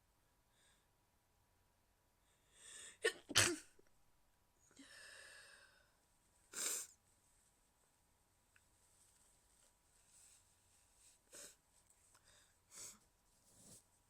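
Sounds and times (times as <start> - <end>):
woman's stifled sneezes: 3.0 - 3.7.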